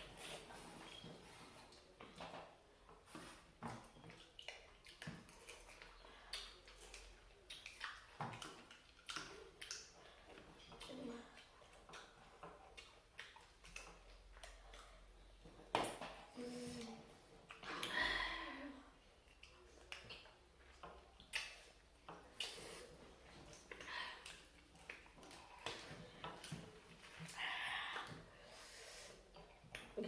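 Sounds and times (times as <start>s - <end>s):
person chewing food: 3.6s - 15.7s, 19.0s - 27.4s.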